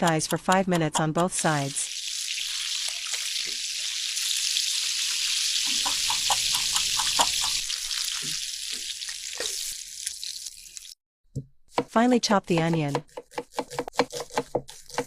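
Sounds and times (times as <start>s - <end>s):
chicken frying in a pan: 1.6s - 11.0s.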